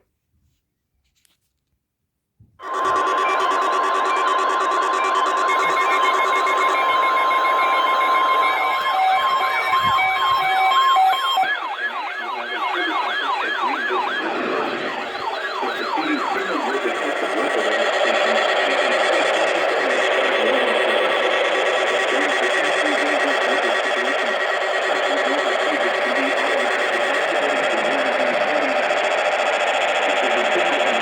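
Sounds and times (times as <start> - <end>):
short beeps: 2.6 - 17.0
steady high alert tone: 2.6 - 29.1
warbling siren-like tone: 2.6 - 31.0.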